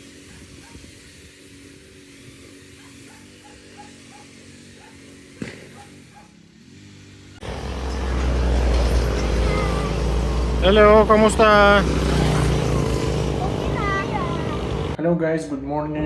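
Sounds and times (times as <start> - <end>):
vehicle wind and road noise: 5.2 - 15.0.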